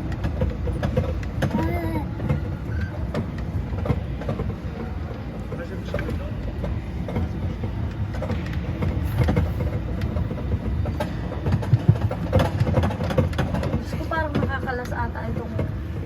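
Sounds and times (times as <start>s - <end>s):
kiddie train ride rumbling: 0.0s - 16.0s.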